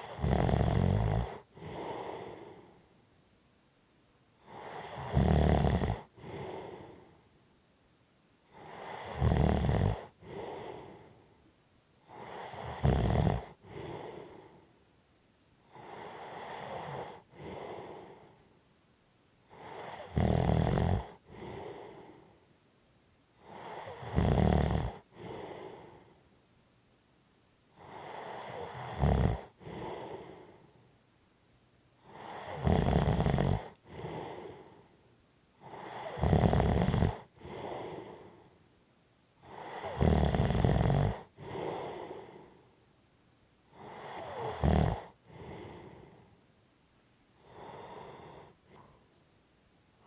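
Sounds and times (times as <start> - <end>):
person snoring heavily: 0.0 - 2.8, 4.4 - 7.1, 8.5 - 11.2, 12.0 - 14.6, 15.7 - 18.4, 19.5 - 22.3, 23.4 - 26.1, 27.8 - 30.6, 32.0 - 34.8, 35.6 - 38.4, 39.4 - 42.6, 43.8 - 46.3, 47.4 - 48.9.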